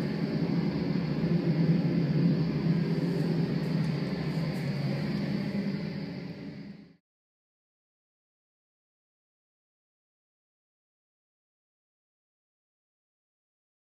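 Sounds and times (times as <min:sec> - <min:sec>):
test noise hiss through wall: 0:00.0 - 0:07.0.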